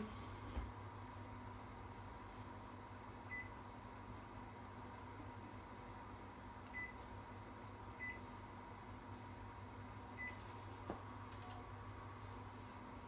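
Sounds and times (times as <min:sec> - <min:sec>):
microwave oven humming: 0:00.0 - 0:13.0
microwave key beeps: 0:03.3 - 0:03.6, 0:06.7 - 0:07.0, 0:08.0 - 0:08.2, 0:10.2 - 0:10.4.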